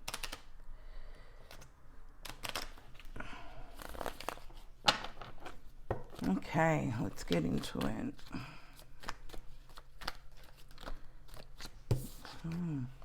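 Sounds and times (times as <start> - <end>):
cards rustling: 2.3 - 3.1, 3.7 - 13.0.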